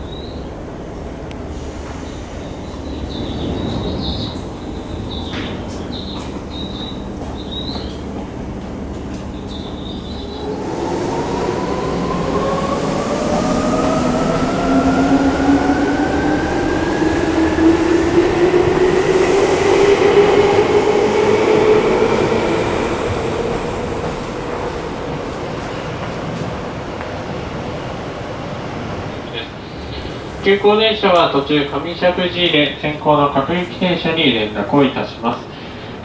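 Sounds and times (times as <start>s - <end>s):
train running noise: 0.0s - 36.0s
electric train motor whine: 10.2s - 26.1s.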